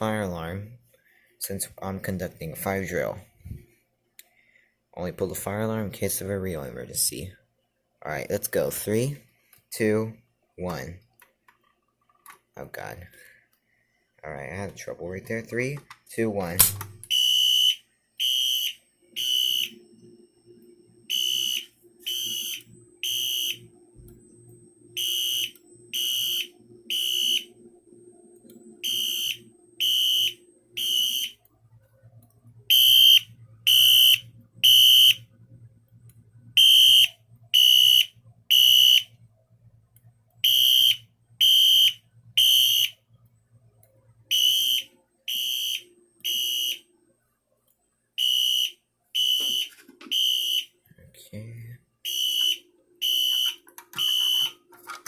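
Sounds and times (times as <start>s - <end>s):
faint low hum: 12.6s - 55.0s
fire alarm horn beeping: 17.0s - 23.8s, 25.0s - 27.7s, 28.7s - 31.5s, 32.7s - 35.3s, 36.6s - 39.2s, 40.4s - 43.0s, 44.3s - 46.9s, 48.2s - 50.7s, 52.0s - 54.6s.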